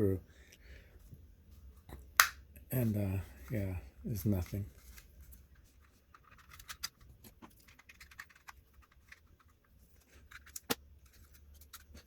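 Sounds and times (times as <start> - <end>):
plastic case clicks and scratches: 6.1 - 9.6.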